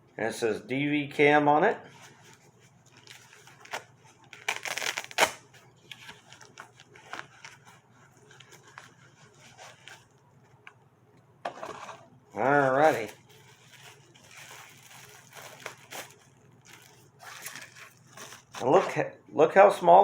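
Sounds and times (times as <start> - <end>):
packaging rustling and crinkling: 1.9 - 10.7, 11.6 - 18.8.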